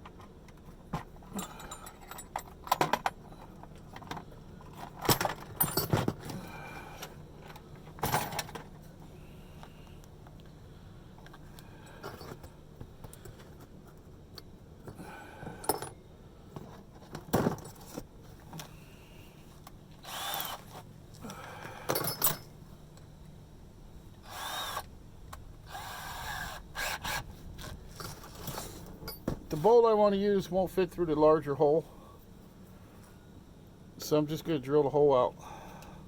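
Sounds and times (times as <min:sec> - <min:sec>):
power drill bursts: 0:20.0 - 0:20.6, 0:24.2 - 0:24.8, 0:25.7 - 0:27.2.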